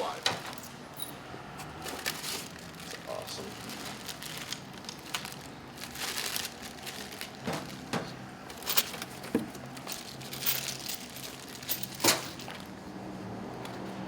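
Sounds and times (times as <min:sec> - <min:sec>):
packaging crinkling and rustling: 0:01.7 - 0:12.7.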